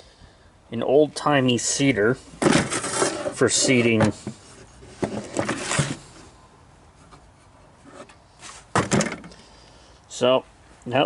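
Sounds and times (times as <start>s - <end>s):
items rubbing and scraping: 2.4s - 6.3s.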